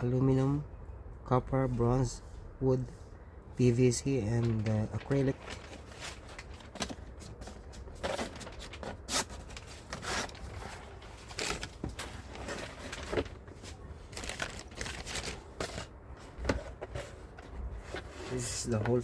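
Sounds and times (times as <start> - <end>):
packaging rustling and crinkling: 4.2 - 19.0.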